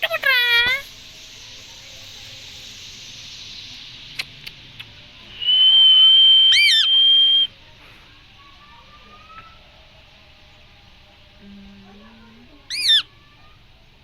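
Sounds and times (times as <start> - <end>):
faint clicks: 4.1 - 5.0
parrot whistling: 5.3 - 7.5, 12.7 - 13.1.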